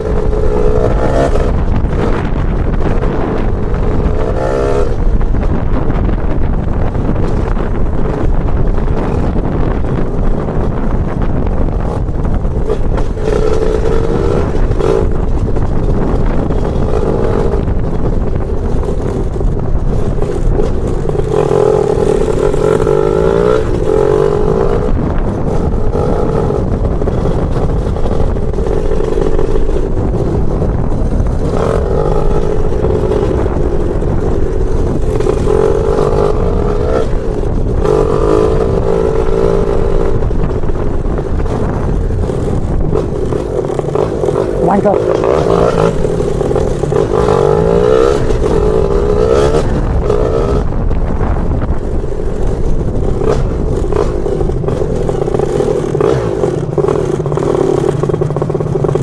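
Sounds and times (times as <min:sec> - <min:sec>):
two-stroke scooter engine revving: 0:00.0 - 0:59.0.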